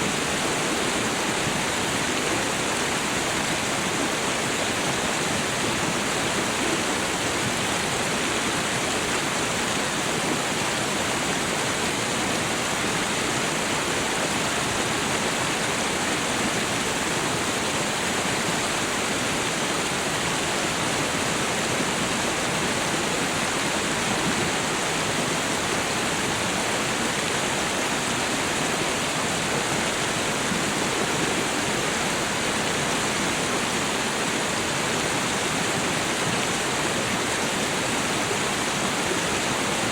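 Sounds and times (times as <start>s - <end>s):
small waterfall splashing: 0.0s - 39.9s
stream running: 0.0s - 39.9s.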